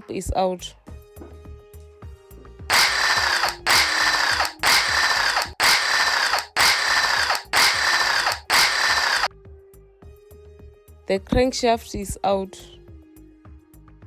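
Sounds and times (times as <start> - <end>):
power tool bursts: 2.7 - 9.3.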